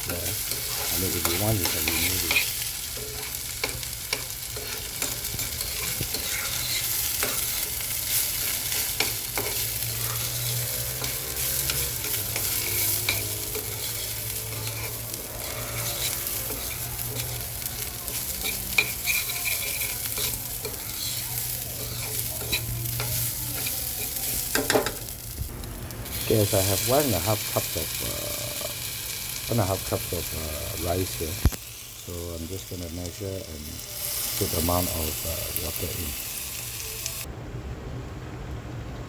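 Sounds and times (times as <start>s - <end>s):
utensil scraping a pot: 0.0s - 25.0s
rice sizzling in oil: 0.0s - 37.3s.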